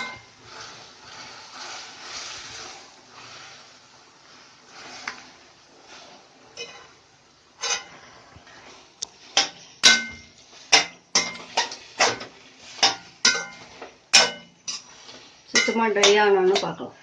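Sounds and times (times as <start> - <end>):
metal spoon clanking against pan: 6.6 - 6.9, 9.4 - 12.2, 12.8 - 14.9, 15.5 - 16.8.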